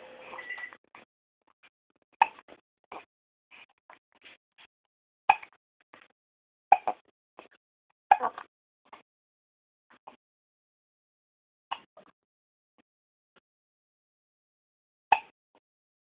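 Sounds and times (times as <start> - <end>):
baby hiccuping: 6.7 - 7.0.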